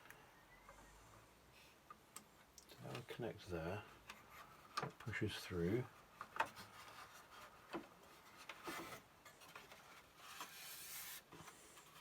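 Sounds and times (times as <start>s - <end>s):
rubbing sound: 10.1s - 12.0s.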